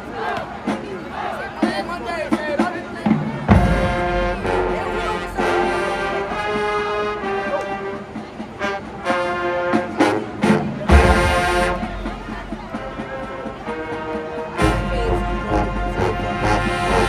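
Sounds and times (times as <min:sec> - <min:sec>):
sharp drum hits: 0:03.1 - 0:05.1
brass section playing chords: 0:03.1 - 0:17.0.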